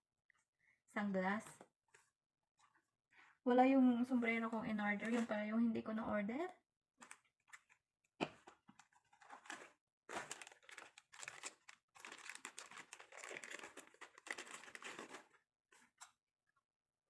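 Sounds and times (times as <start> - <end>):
plastic packaging crinkling: 8.8 - 15.4.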